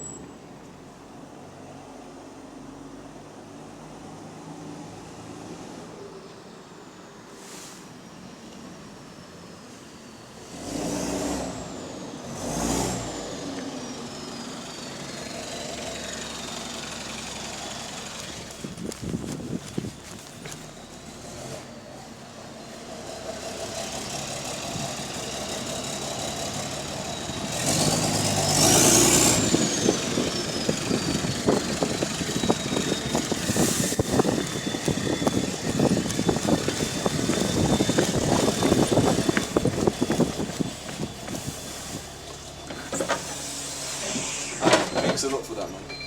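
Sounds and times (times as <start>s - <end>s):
diesel bus engine pulling away: 0.0s - 46.0s
high engine whine: 0.0s - 46.0s
leaking exhaust puffing and rattling: 15.4s - 45.7s.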